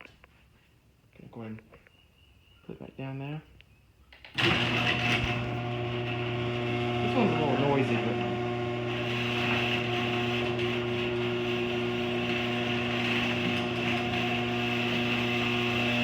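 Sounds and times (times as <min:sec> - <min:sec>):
garage door opener motor hum: 0:04.3 - 0:16.0.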